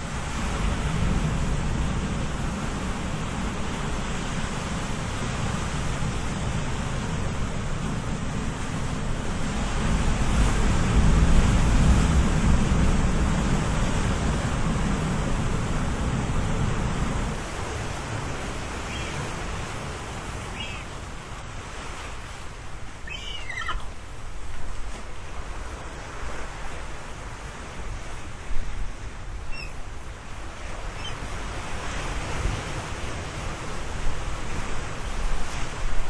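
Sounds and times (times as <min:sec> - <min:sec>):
ocean waves breaking on shore: 0:00.0 - 0:36.0
high-pitched calls: 0:18.8 - 0:19.3, 0:20.4 - 0:20.9, 0:23.0 - 0:23.9, 0:29.5 - 0:29.8.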